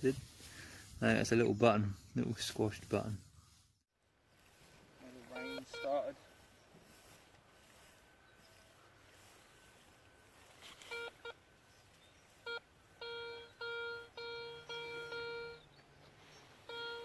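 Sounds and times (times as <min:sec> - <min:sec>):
metal detector beeps: 0:05.3 - 0:06.3, 0:10.7 - 0:11.4, 0:12.4 - 0:15.8, 0:16.6 - 0:17.0.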